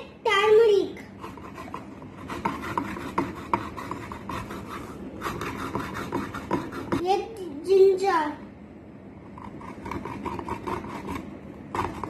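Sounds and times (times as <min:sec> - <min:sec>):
root rasping on a grater: 0:01.1 - 0:07.0, 0:09.3 - 0:12.0.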